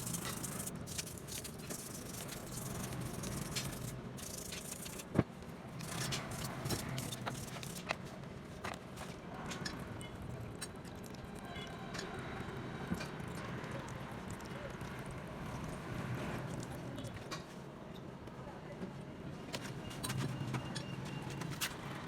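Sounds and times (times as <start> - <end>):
metal parts and tools clicking: 0.0 - 5.0, 5.8 - 8.0.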